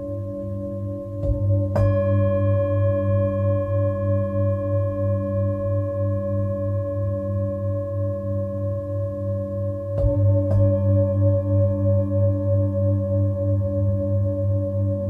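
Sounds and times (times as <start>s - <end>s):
singing bowl ringing: 0.0s - 15.0s
singing bowl struck: 1.2s - 6.2s, 10.0s - 13.0s.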